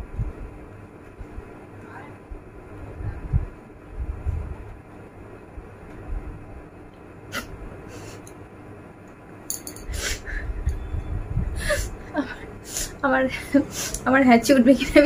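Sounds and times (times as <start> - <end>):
woman sniffing: 7.3 - 8.3, 9.9 - 10.3.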